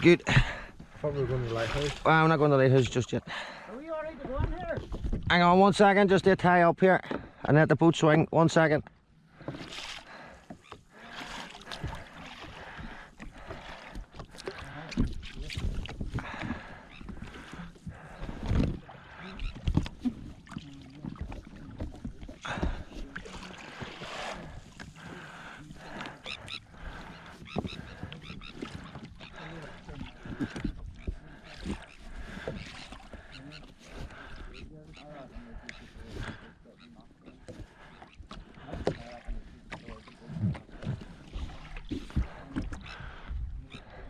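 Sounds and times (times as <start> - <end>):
water against boat hull: 0.0 - 44.0
voices: 20.5 - 38.0
birds calling high cries: 25.9 - 29.6.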